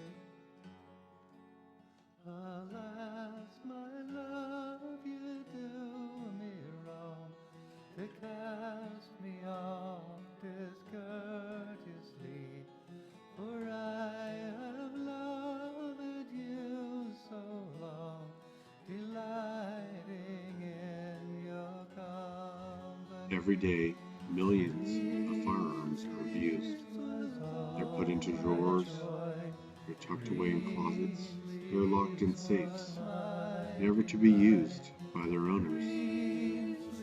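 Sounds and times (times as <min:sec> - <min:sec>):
acoustic guitar playing: 0:00.0 - 0:37.0
person singing: 0:23.0 - 0:37.0.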